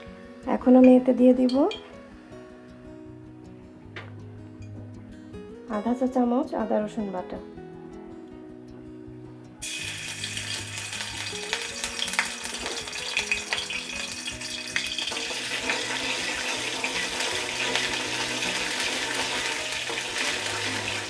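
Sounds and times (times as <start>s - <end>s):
paste sizzling in hot oil: 9.6s - 21.0s.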